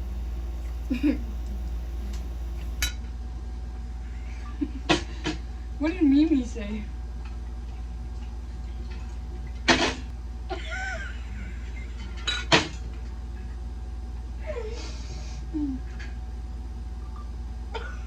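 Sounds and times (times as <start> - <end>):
steady low hum: 0.0 - 2.9.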